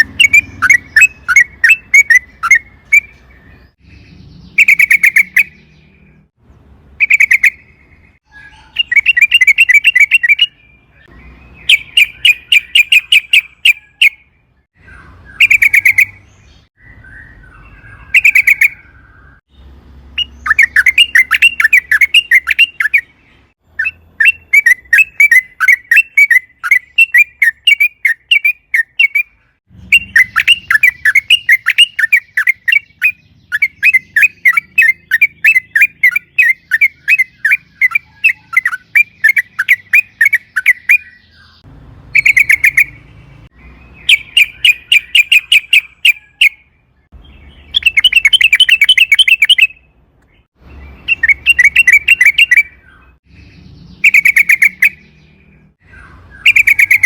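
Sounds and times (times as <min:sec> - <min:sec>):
bird chattering song: 0:00.0 - 0:57.0.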